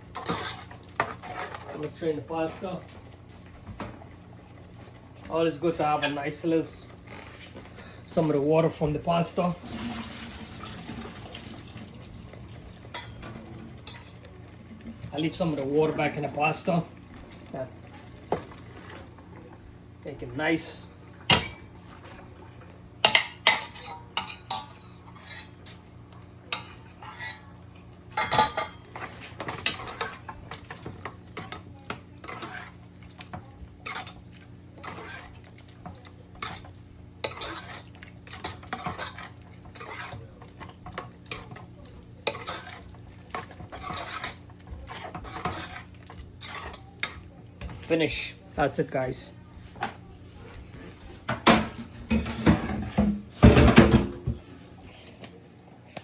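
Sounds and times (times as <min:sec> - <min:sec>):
metal utensil scraping a pan: 0:00.1 - 0:02.7, 0:23.0 - 0:25.8, 0:26.5 - 0:27.5, 0:32.2 - 0:32.8, 0:34.8 - 0:35.4, 0:36.4 - 0:41.6, 0:42.2 - 0:48.2.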